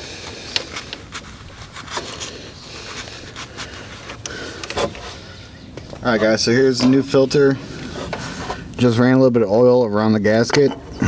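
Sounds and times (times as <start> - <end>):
rustling: 0.0 - 8.7
light clicks and scrapes: 0.2 - 7.0.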